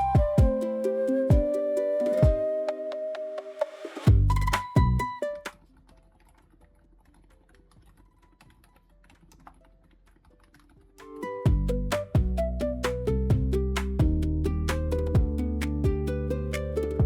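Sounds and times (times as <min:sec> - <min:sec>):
background music: 0:00.0 - 0:05.6, 0:11.1 - 0:17.0
soft keyboard typing: 0:04.3 - 0:11.2.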